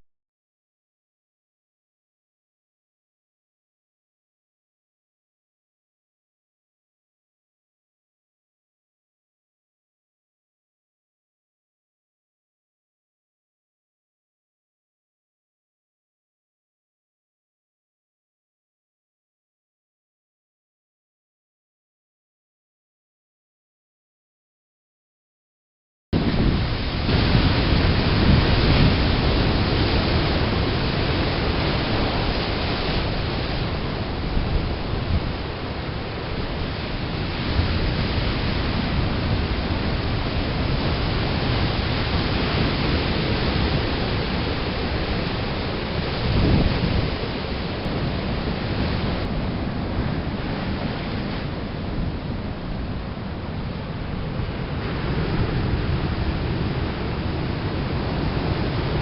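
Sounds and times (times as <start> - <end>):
surf breaking on rocky shore: 26.2 - 59.0.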